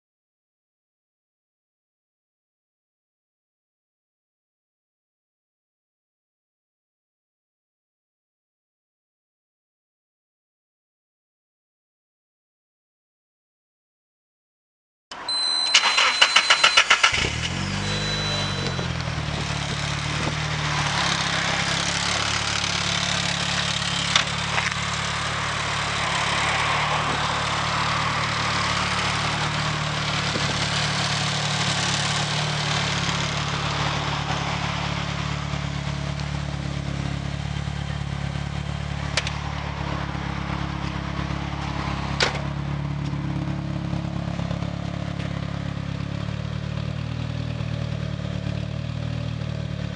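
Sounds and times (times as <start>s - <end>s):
car engine starting and idling: 15.1s - 49.9s.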